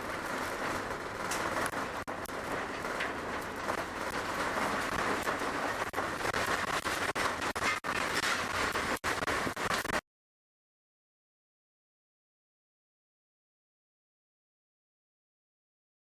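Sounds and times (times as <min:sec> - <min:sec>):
earthquake rattling rumble: 0:00.0 - 0:10.0.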